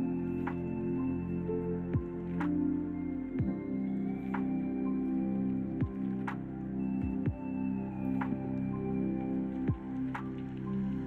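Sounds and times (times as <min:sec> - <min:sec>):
soft ambient instrumental music: 0:00.0 - 0:11.0.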